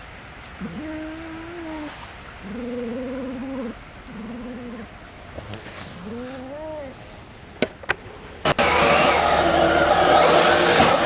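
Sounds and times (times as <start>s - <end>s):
electric toy car motor whine: 8.5s - 11.0s.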